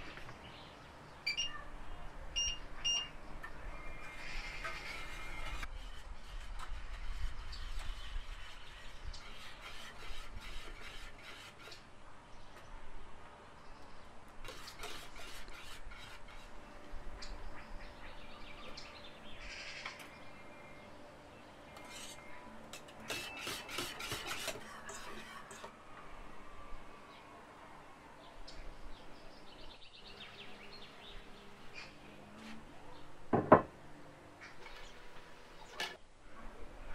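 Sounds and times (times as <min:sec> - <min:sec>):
utensil scraping cookware: 0:21.8 - 0:25.7.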